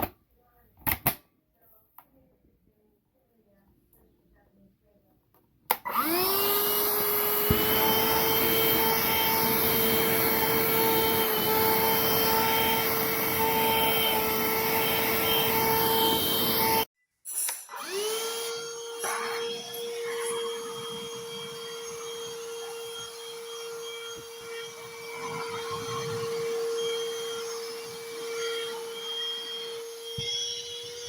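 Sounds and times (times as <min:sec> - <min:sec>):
handheld vacuum motor whine: 0:05.7 - 0:31.0.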